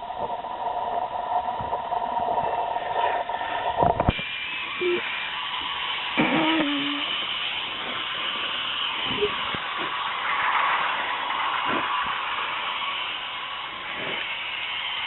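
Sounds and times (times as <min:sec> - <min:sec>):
toy roller coaster whirring rattle: 0:04.1 - 0:15.0.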